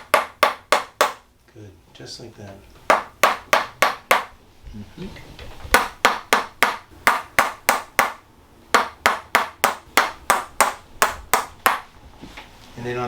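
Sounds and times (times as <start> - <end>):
wooden mallet tapping wooden stick: 0.0 - 1.2, 2.9 - 4.3, 5.7 - 8.2, 8.8 - 11.9.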